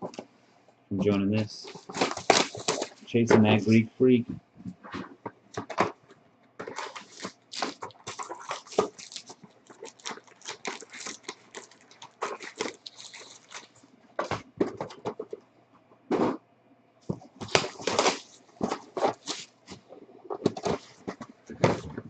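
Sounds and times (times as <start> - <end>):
plastic wrapping crinkling: 1.5 - 3.8, 6.6 - 15.3, 17.4 - 22.0.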